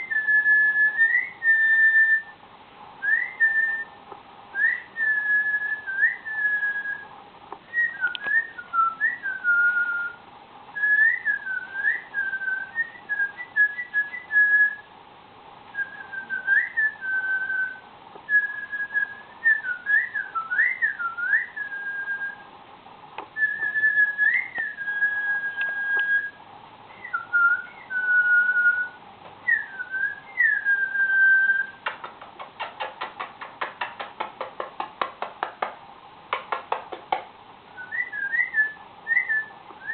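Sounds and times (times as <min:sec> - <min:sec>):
cockatiel whistling: 0:00.0 - 0:02.4, 0:03.0 - 0:07.1, 0:07.7 - 0:10.2, 0:10.8 - 0:14.9, 0:15.8 - 0:22.4, 0:23.4 - 0:32.0, 0:37.8 - 0:39.9.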